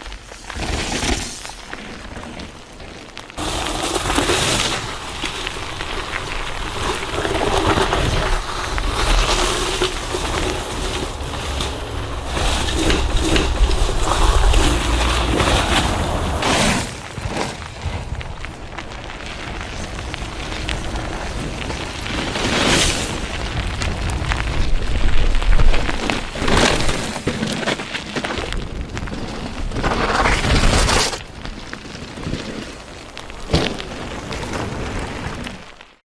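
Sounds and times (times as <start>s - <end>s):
bike tyre noise: 0.0s - 36.0s
bike frame and chain clattering: 0.2s - 35.9s
low rumble: 5.0s - 16.8s.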